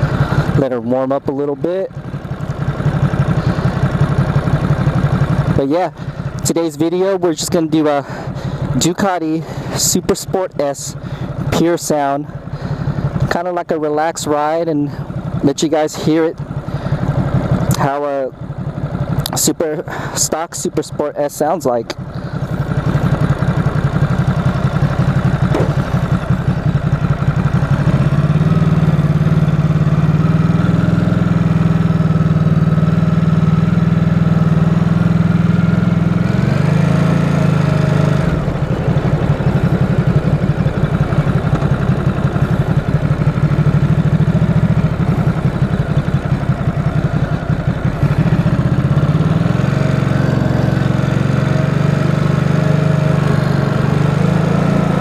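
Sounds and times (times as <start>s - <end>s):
motorcycle engine idling: 0.0s - 55.0s.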